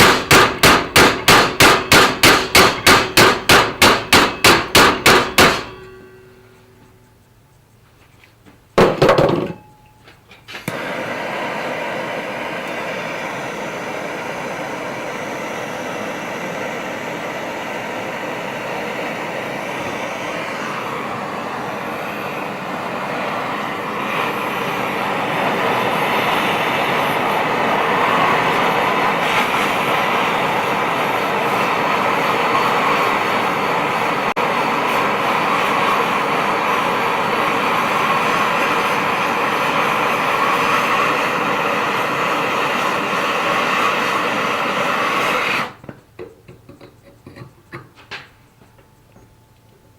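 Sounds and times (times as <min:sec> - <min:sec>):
hammer blow on steel: 0:00.0 - 0:07.2
gas burner roaring: 0:00.0 - 0:48.4.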